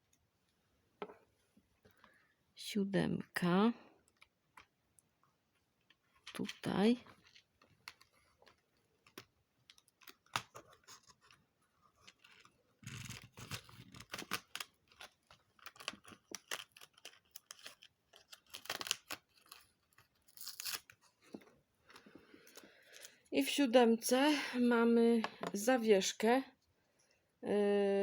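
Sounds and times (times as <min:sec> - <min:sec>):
plastic foil tearing and crinkling: 0:09.7 - 0:21.1.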